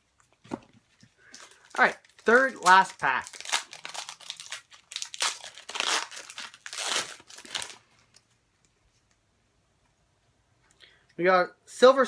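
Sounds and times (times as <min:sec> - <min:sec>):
wrapper crinkling and tearing: 0:01.2 - 0:08.2.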